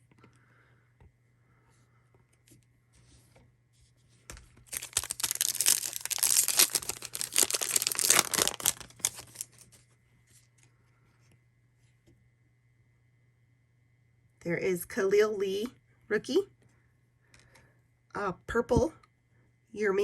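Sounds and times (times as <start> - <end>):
foil wrapper tearing and crinkling: 4.6 - 9.8.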